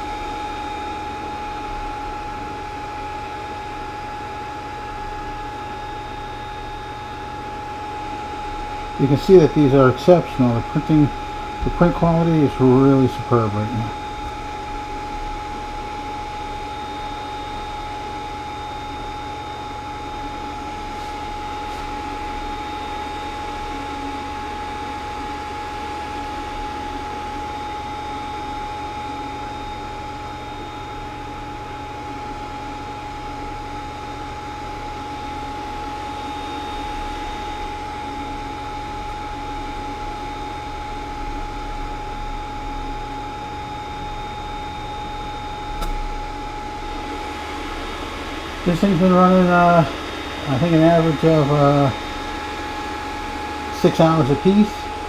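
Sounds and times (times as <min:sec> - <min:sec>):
fan whine: 0:00.0 - 0:55.0
low hum: 0:08.3 - 0:17.2, 0:41.3 - 0:55.0.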